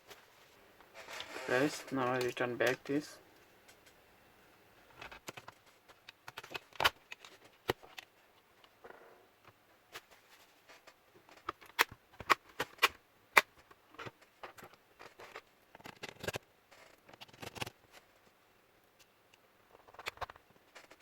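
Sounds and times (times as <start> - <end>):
soft scraping: 0.1 - 2.4
plastic laptop parts clicking: 4.9 - 8.7, 11.3 - 17.8.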